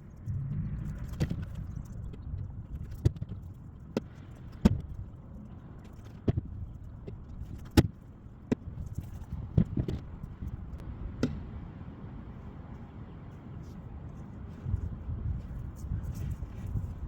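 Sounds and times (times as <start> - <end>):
low rumble: 0.0 - 5.4.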